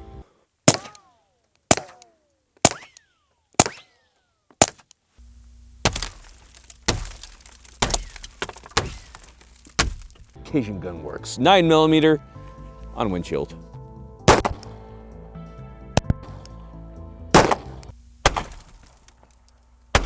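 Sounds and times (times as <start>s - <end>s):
bullets cracking on windshield: 0.7s - 3.9s, 4.5s - 5.0s, 5.8s - 10.4s, 14.3s - 14.7s, 17.4s - 20.0s
steady low hum: 5.2s - 10.4s, 17.4s - 20.0s.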